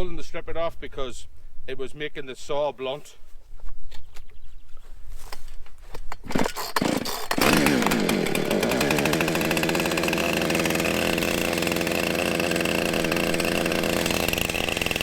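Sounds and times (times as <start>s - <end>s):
chainsaw starter cord pulls: 5.3s - 15.0s
chainsaw engine running: 6.1s - 15.0s.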